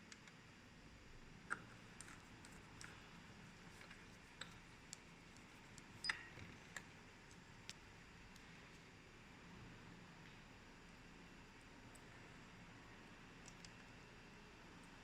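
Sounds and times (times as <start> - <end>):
low hiss: 0.0 - 15.0
small parts clicking and tapping: 13.4 - 14.0.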